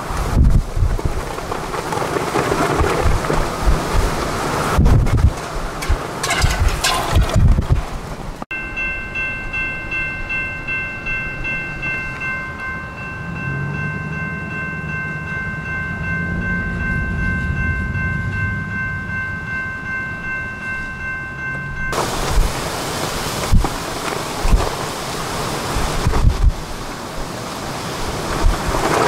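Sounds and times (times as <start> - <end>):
low rumble: 13.0 - 22.6.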